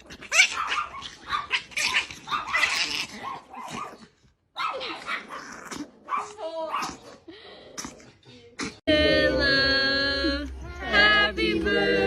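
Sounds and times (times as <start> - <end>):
dog barking and yipping: 0.1 - 7.2.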